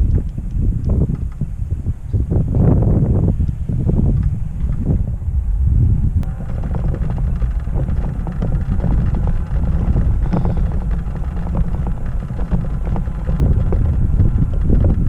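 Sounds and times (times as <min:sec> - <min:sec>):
wind buffeting microphone: 0:00.0 - 0:15.0
light clicks and knocks: 0:06.2 - 0:15.0.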